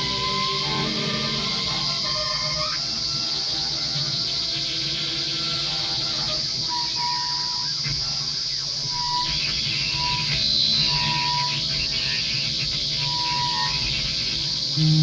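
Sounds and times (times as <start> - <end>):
steady high hiss: 0.0 - 15.0
low hum: 14.7 - 15.0
short high tones: 14.8 - 15.0.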